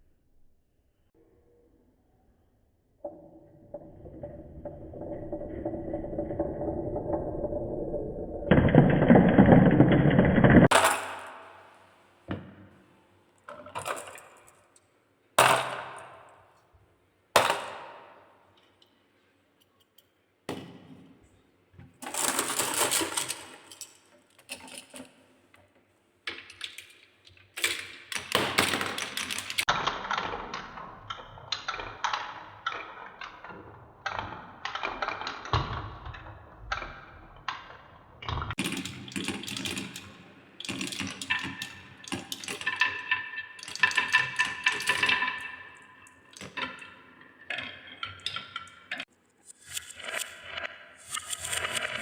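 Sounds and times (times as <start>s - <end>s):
balls clattering down marble run: 3.7s - 11.8s, 13.5s - 14.7s, 15.4s - 16.5s, 22.0s - 25.1s, 26.3s - 49.1s.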